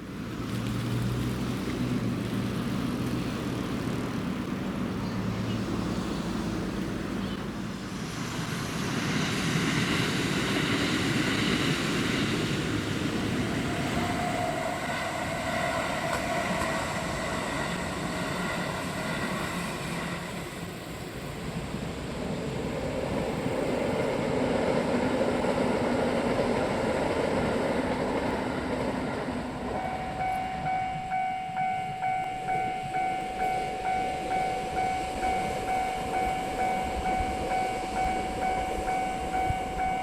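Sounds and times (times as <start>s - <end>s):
electric train passing: 0.0s - 40.0s
high whining tones: 29.5s - 40.0s.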